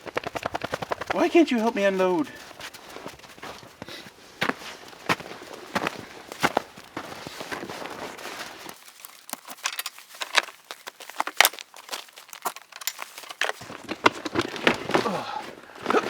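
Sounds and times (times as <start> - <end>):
packaging crinkling and rustling: 5.0 - 15.2.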